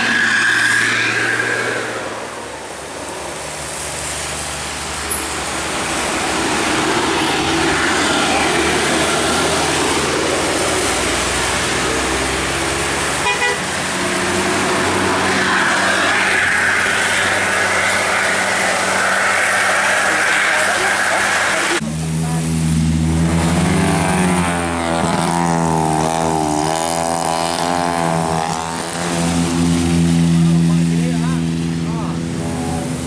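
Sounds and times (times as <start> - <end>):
bus and traffic engines: 0.0 - 33.0
tyres hissing on wet road: 0.0 - 33.0
horn tooting: 13.1 - 13.9.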